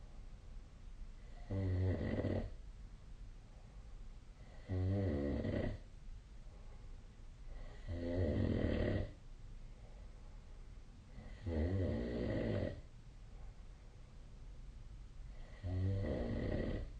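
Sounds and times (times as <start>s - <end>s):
person snoring: 1.2s - 2.6s, 4.4s - 5.8s, 7.6s - 9.2s, 11.1s - 12.8s, 15.3s - 16.9s
quiet breathing: 3.2s - 16.9s.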